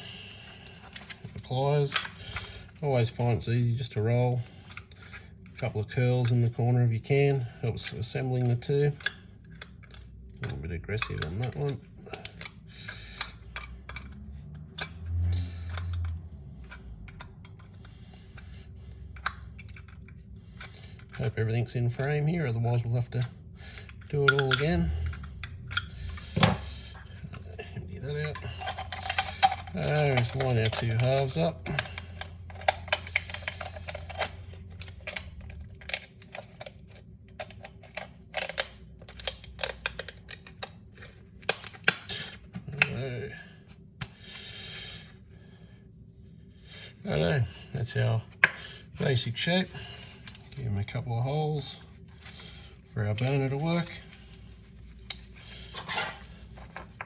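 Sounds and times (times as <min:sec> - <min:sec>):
thin metal clicking and crinkling: 0:00.6 - 0:43.1, 0:51.6 - 0:57.0
aluminium can pieces crinkling: 0:28.3 - 0:43.0.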